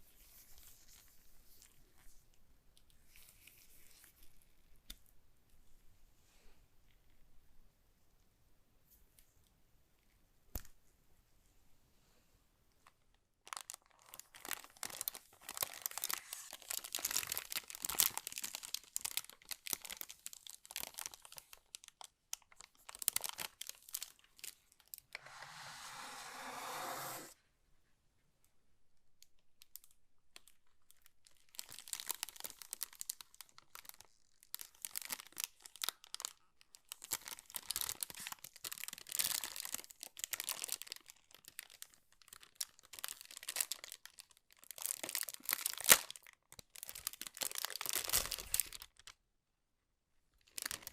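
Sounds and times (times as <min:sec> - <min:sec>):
packaging crinkling and tearing: 0:13.4 - 0:25.1, 0:29.6 - 0:49.2, 0:50.4 - 0:50.9.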